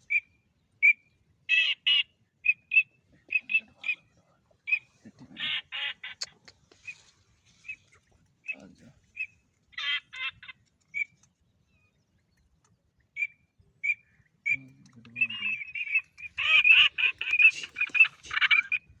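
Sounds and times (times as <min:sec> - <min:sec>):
birds calling: 0:00.0 - 0:19.0.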